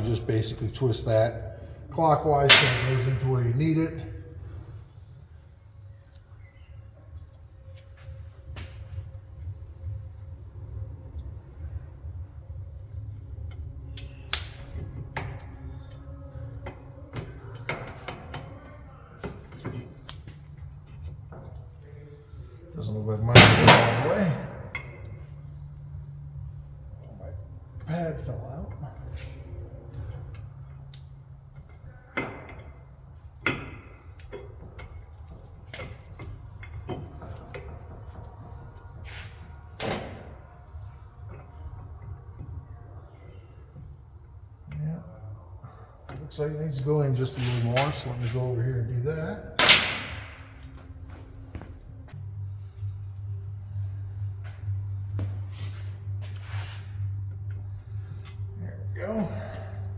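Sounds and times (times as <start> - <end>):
steady low hum: 0.0 - 59.9
sharp metallic knocks: 2.5 - 3.4.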